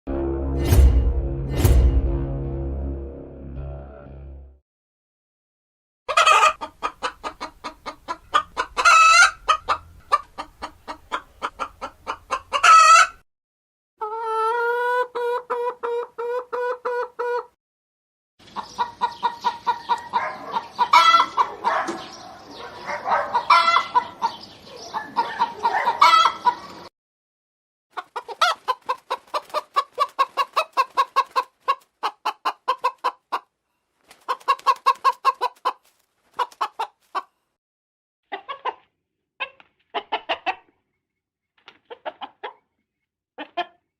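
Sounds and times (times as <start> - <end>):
long held chicken call: 6.1 - 7.6, 8.3 - 9.8, 11.2 - 13.2, 14.0 - 17.5, 18.6 - 21.7, 23.3 - 26.9
chicken squawks: 6.1 - 13.2, 14.0 - 17.6, 18.6 - 26.9, 27.9 - 33.5, 34.1 - 37.3, 39.4 - 40.7
chickens clucking: 6.1 - 13.2, 14.0 - 17.6, 18.4 - 26.9, 27.9 - 37.3, 38.3 - 40.8, 41.6 - 42.8, 43.4 - 43.8.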